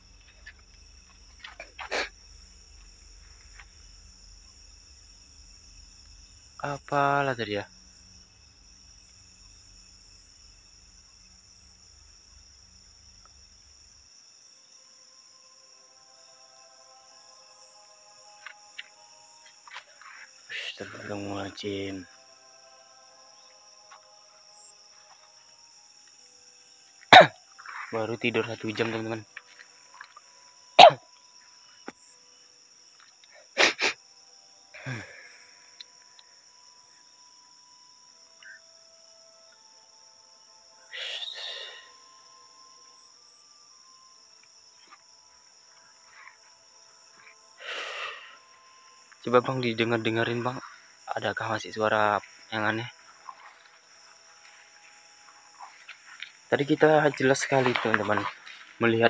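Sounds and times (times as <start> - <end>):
night insects chorus: 0.0 - 59.0
person sneezing: 1.8 - 2.1, 27.1 - 27.4, 30.8 - 31.0, 33.5 - 34.0, 34.8 - 35.3
person coughing: 30.8 - 31.0, 34.8 - 35.2.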